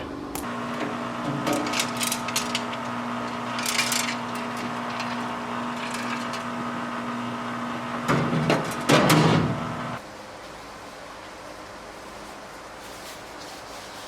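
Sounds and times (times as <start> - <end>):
small metal parts clinking: 1.6 - 2.9, 3.5 - 6.5.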